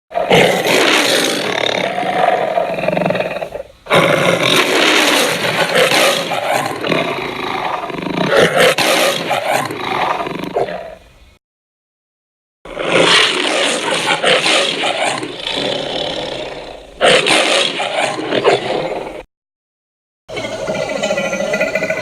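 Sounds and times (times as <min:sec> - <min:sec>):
dragon roar: 0:00.1 - 0:11.0, 0:12.7 - 0:19.2.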